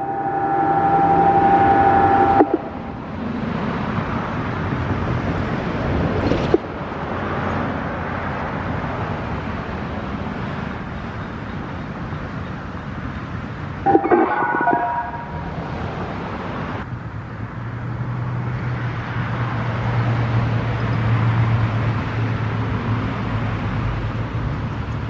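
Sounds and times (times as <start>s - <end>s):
warning siren steady tone: 0.0s - 3.1s, 13.8s - 15.7s
road traffic: 0.0s - 25.0s.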